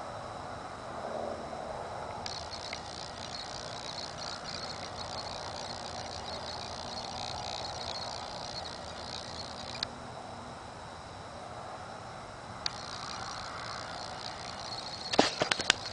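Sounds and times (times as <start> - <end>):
sharp click: 2.2 - 9.9, 12.6 - 15.9
background hiss: 2.3 - 9.9, 12.5 - 15.9
high-pitched electronic interference: 2.3 - 11.4, 12.6 - 15.9.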